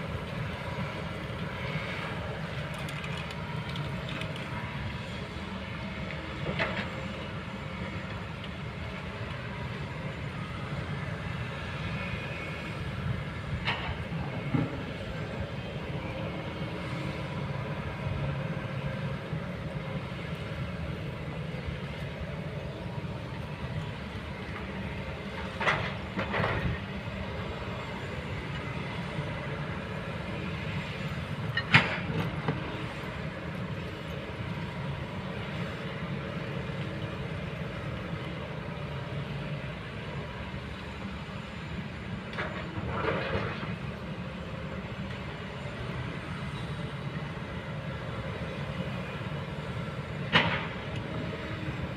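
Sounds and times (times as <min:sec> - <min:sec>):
excavator diesel engine running: 0:00.0 - 0:51.9.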